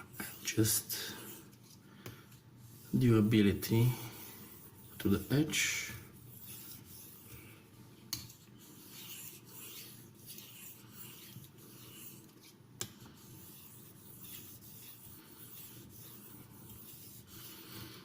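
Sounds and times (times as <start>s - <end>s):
knife scraping on sharpening stone: 8.1s - 12.6s, 13.2s - 17.4s.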